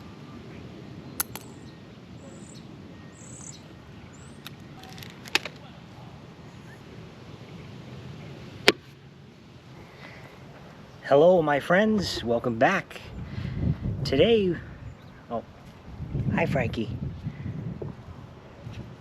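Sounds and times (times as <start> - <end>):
sharp clicks: 1.2 - 1.6
high bird chirps: 1.2 - 4.4.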